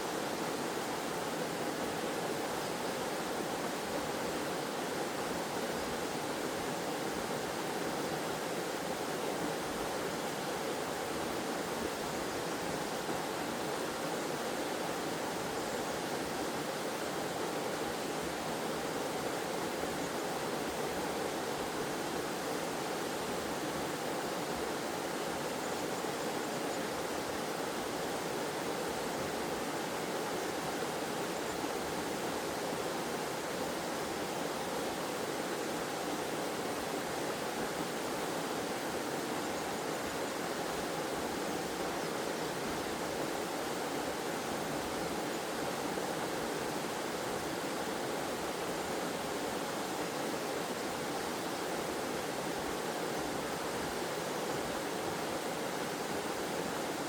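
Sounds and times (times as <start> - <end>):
waterfall and stream rushing: 0.0 - 57.0.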